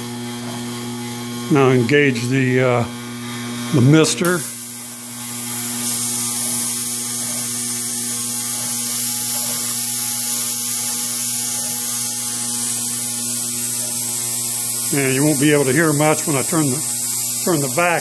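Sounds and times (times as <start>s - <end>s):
belt grinder motor humming: 4.2s - 18.0s
coolant mist spraying hiss: 4.2s - 18.0s.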